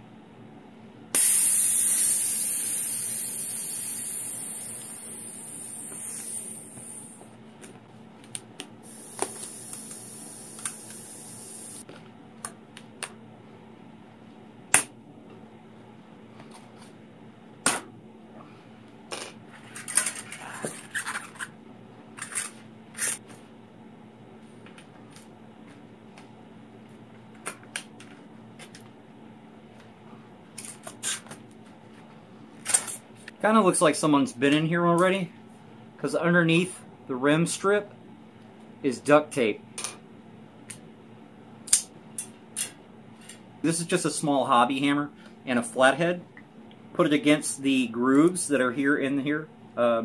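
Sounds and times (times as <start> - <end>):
air hissing out of tyre valve: 1.2 - 7.2, 8.8 - 11.8.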